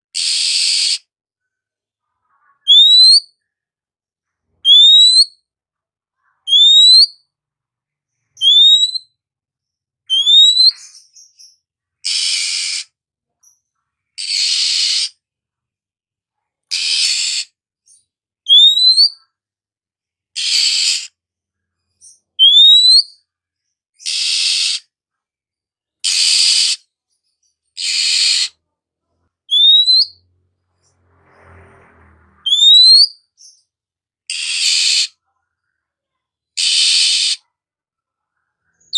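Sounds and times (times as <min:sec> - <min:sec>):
bird harsh rasping calls: 0:00.1 - 0:01.1, 0:10.1 - 0:11.4, 0:12.0 - 0:13.0, 0:14.2 - 0:15.2, 0:16.7 - 0:17.6, 0:20.4 - 0:21.1, 0:24.0 - 0:24.9, 0:26.0 - 0:26.9, 0:27.8 - 0:28.6, 0:29.5 - 0:30.2, 0:32.4 - 0:33.6, 0:34.3 - 0:35.2, 0:36.6 - 0:37.5
bird whistling upward: 0:02.7 - 0:03.3, 0:04.7 - 0:05.3, 0:06.5 - 0:07.2, 0:08.4 - 0:09.1, 0:10.1 - 0:10.9, 0:18.5 - 0:19.2, 0:22.4 - 0:23.2, 0:29.5 - 0:30.2, 0:32.4 - 0:33.6.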